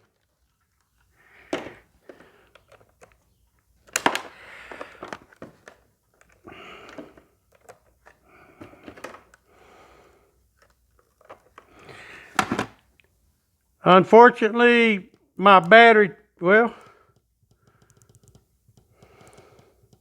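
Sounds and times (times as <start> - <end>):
battery tester clicks and rustling: 2.4 - 8.2.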